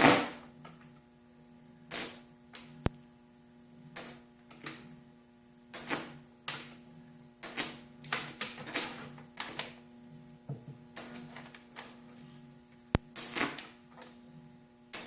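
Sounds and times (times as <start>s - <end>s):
electric arcs crackling: 0.0s - 0.9s, 1.9s - 3.0s, 3.9s - 4.9s, 5.7s - 6.8s, 7.4s - 9.8s, 10.9s - 14.2s.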